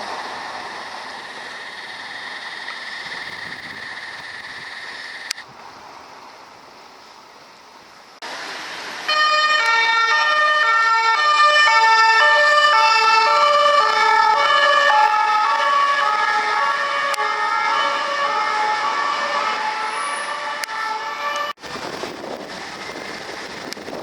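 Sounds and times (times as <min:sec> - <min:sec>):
traffic noise: 0:00.0 - 0:24.0
two-tone police siren: 0:09.0 - 0:21.6.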